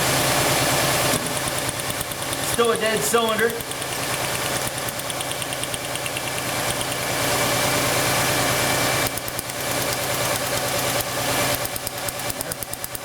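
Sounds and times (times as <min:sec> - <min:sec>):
car engine idling with misfire: 0:00.0 - 0:13.0
sharp spark ticking: 0:01.7 - 0:07.1.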